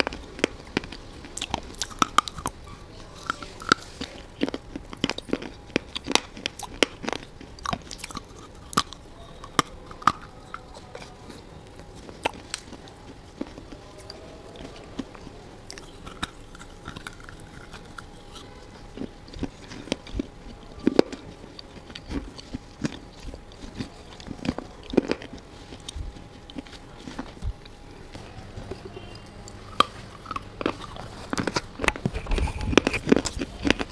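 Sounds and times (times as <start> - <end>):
person crunching brittle clay: 0.0 - 33.9.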